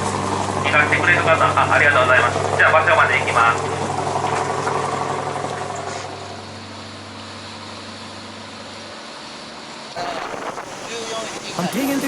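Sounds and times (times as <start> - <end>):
boat engine droning: 0.0 - 12.0
wind and water hiss: 10.0 - 12.0.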